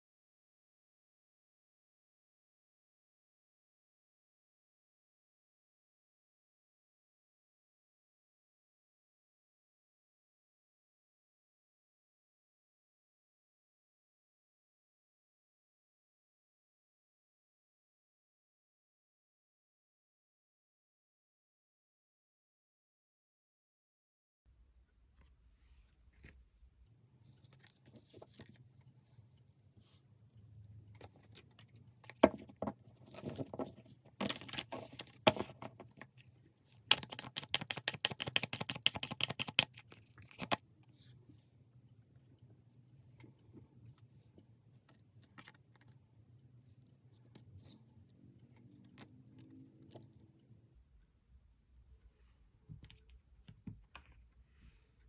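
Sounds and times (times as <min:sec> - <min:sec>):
cards being shuffled: 0:31.0 - 0:36.2, 0:36.8 - 0:40.6.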